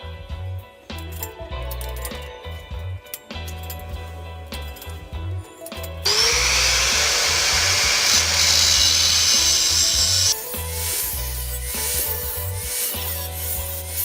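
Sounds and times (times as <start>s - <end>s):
background music: 0.0s - 14.0s
power tool motor whine: 6.1s - 10.4s.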